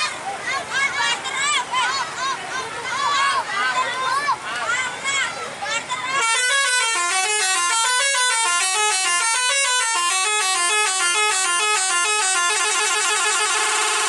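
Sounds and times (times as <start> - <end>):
bus horn playing shrill melody: 6.2 - 14.0.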